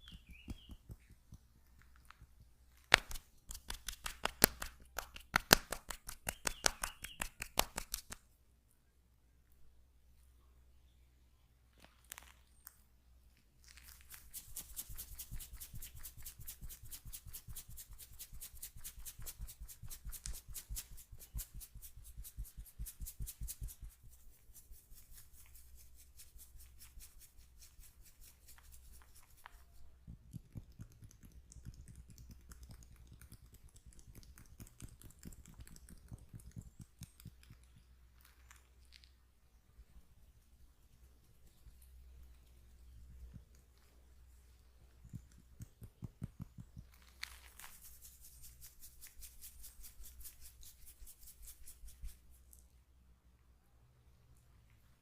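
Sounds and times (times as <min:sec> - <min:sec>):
hands tapping on body: 0:00.0 - 0:08.2, 0:29.4 - 0:37.9, 0:45.0 - 0:47.0.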